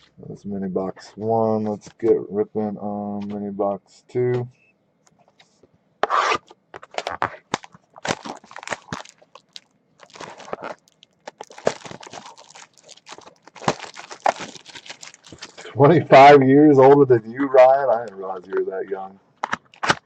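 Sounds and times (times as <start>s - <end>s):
packaging ripping and crackling: 6.8s - 15.7s, 19.4s - 20.0s.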